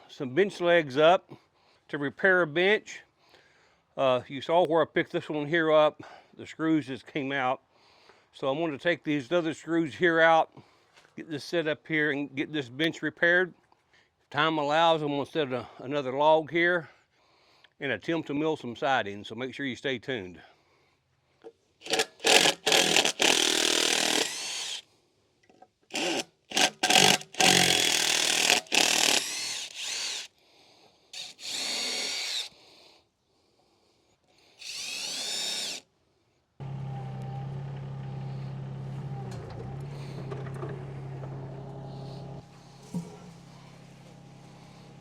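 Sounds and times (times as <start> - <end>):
cordless drill whining: 21.8 - 24.8, 25.9 - 30.3, 31.2 - 32.6, 34.6 - 35.9.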